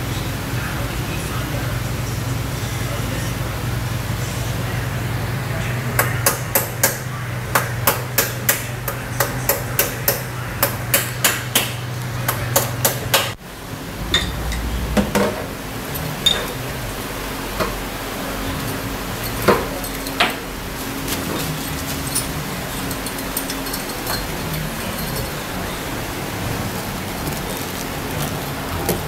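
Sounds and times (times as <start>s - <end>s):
hammer striking: 7.6s - 13.4s
low hum: 13.4s - 27.4s.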